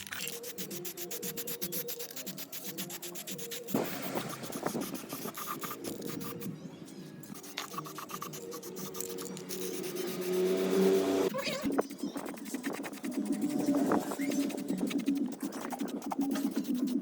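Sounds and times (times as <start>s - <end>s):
rubbing and scraping strokes on metal: 0.0s - 17.0s.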